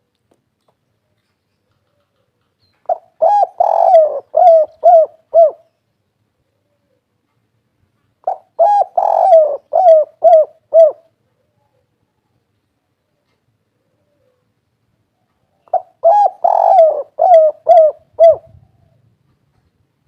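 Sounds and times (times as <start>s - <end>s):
dove cooing: 1.7s - 5.7s, 8.2s - 12.2s, 13.8s - 14.6s, 15.2s - 19.1s.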